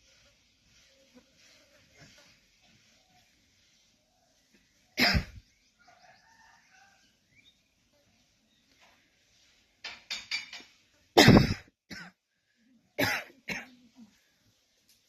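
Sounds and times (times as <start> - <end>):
person coughing: 5.0 - 5.4, 11.2 - 12.2.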